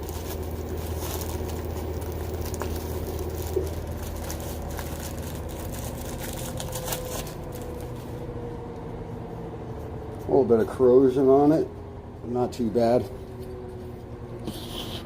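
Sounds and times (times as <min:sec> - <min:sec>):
packaging rustling: 0:00.0 - 0:08.3
low background hum: 0:00.0 - 0:15.0.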